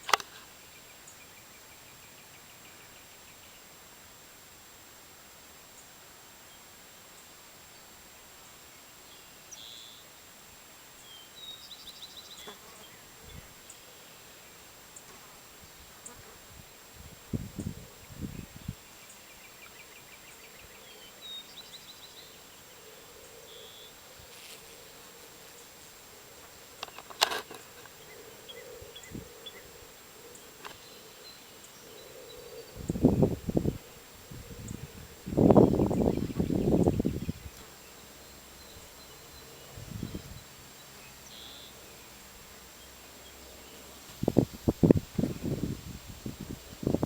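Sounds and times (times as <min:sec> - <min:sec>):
rustling: 0:24.2 - 0:28.0
bee buzzing: 0:32.3 - 0:38.6.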